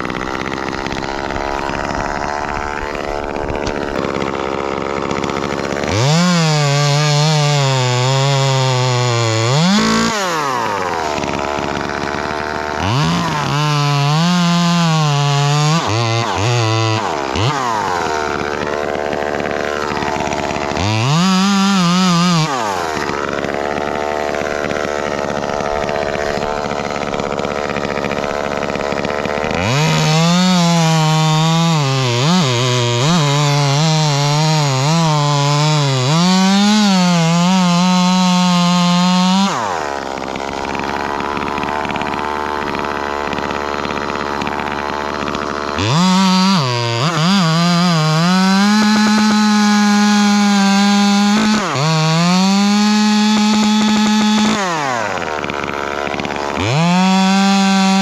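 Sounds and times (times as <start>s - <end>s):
chainsaw revving and cutting: 0.0s - 58.0s.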